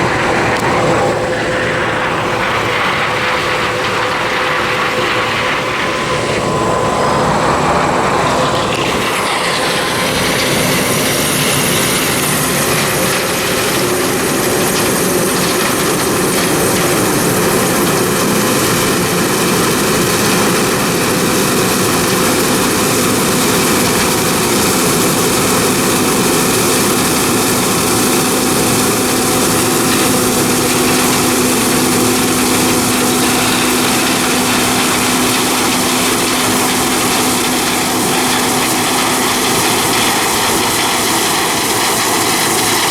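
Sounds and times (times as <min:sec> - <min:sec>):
farm machinery engine droning: 0:00.0 - 0:42.9.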